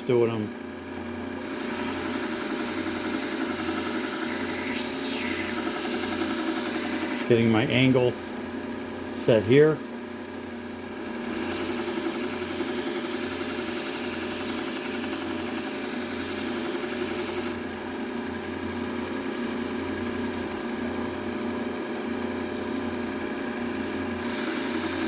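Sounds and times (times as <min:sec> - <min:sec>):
knife grinding on sander belt: 0:01.4 - 0:07.3, 0:23.7 - 0:25.0
belt sander motor humming: 0:01.4 - 0:07.4, 0:11.2 - 0:17.6, 0:23.5 - 0:25.0.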